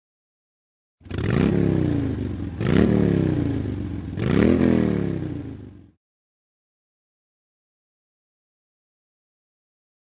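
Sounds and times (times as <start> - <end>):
motorcycle engine revving: 1.0 - 6.0.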